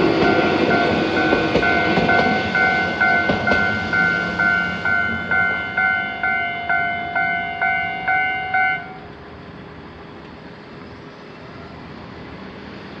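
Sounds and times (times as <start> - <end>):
level crossing warning bell: 0.0 - 9.1.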